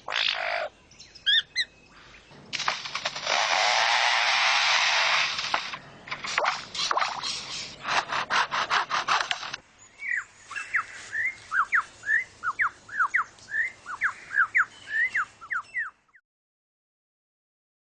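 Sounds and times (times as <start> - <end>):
bird making rasping saw-like calls: 2.6 - 9.6.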